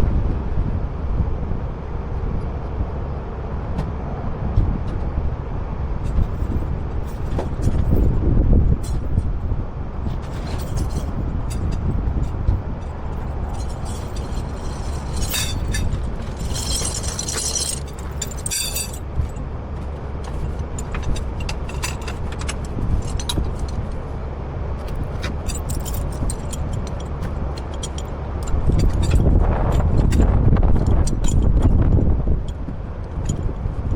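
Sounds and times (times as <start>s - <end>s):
heavy truck engine rumbling: 0.0s - 33.9s
metallic jingling rattle: 10.0s - 24.2s, 24.8s - 31.9s.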